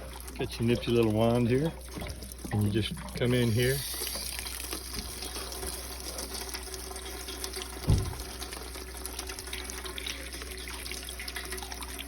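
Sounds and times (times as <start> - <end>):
water spraying and pouring: 0.0 - 9.6
low thump: 7.8 - 8.4.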